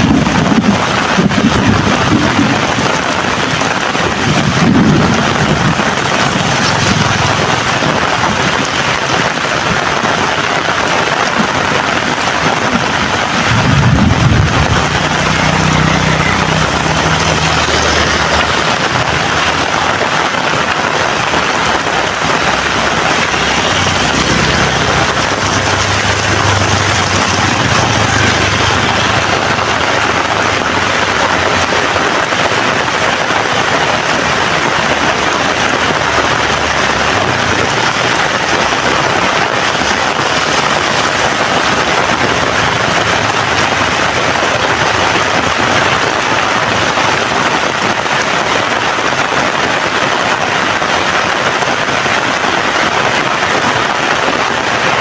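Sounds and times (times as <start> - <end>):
heavy rain falling: 0.0 - 55.0
low rumble: 12.8 - 20.0.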